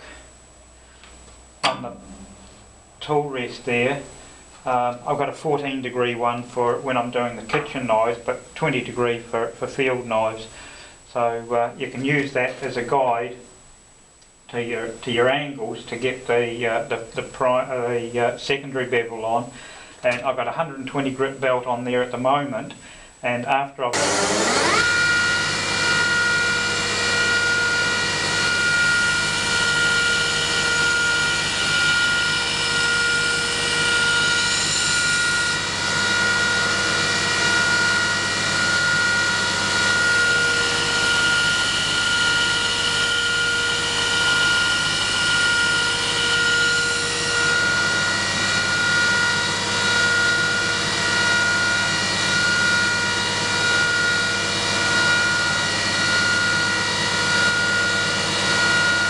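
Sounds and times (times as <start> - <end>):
belt grinder motor whine: 23.9 - 59.0.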